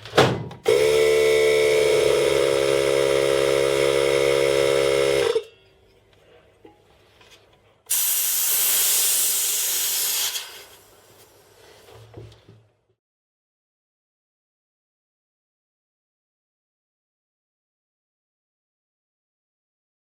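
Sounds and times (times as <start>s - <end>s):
air compressor running: 0.6s - 5.5s, 7.9s - 11.7s
compressed air hissing: 7.9s - 11.9s.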